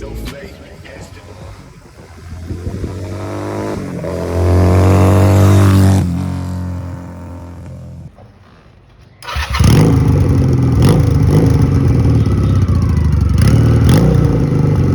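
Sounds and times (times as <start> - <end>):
motorcycle engine starting and running: 0.0 - 14.9.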